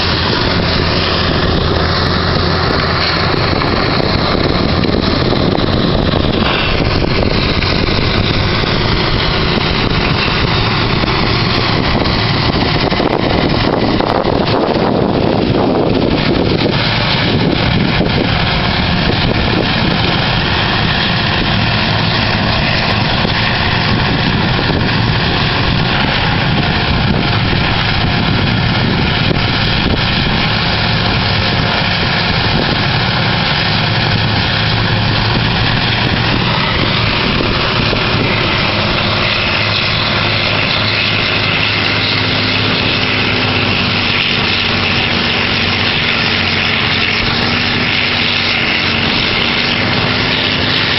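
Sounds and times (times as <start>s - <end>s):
heavy diesel machinery din: 0.0s - 50.9s.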